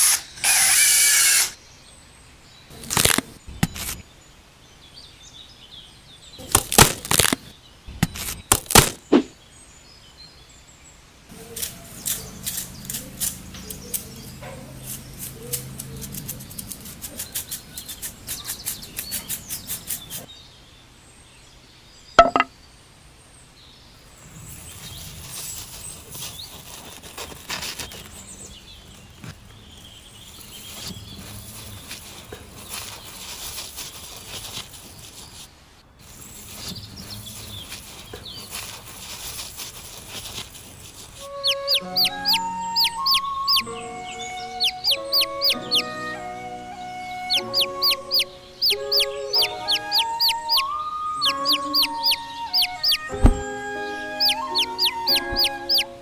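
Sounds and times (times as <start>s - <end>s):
sharp snap: 6.4s - 9.3s
soft rustling hiss: 10.8s - 45.9s.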